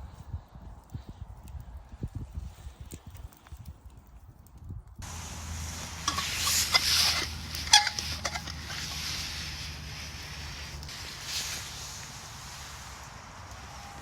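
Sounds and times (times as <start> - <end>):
food cooking hiss: 5.0 - 14.0
spoon scraping in cooking pot: 5.8 - 9.6.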